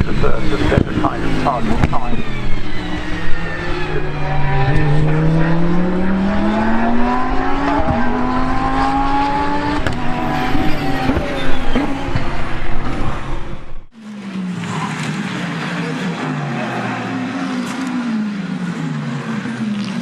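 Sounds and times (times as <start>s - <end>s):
other race car engines: 0.0s - 20.0s
race car engine accelerating: 0.0s - 20.0s.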